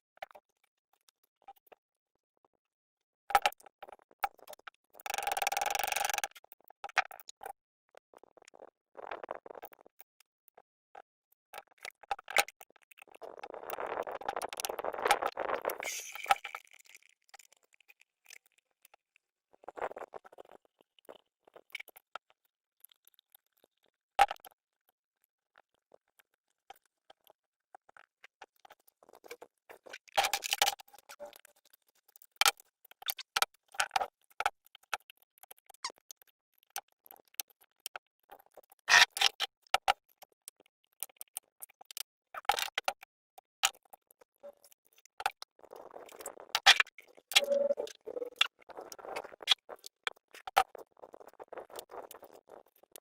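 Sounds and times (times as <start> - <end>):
small hard objects clicking: 4.4 - 7.2, 28.6 - 44.0.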